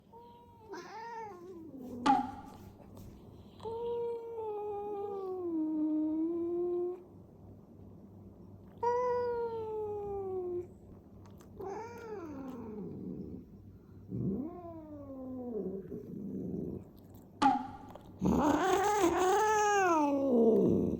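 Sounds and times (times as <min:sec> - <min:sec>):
cat yowling: 0:00.2 - 0:02.3, 0:11.6 - 0:12.9, 0:18.2 - 0:20.9.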